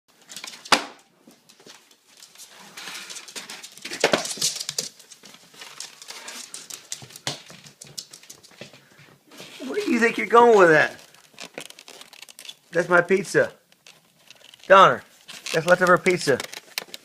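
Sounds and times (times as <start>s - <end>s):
styrofoam crunch: 9.6s - 12.8s, 13.7s - 17.0s.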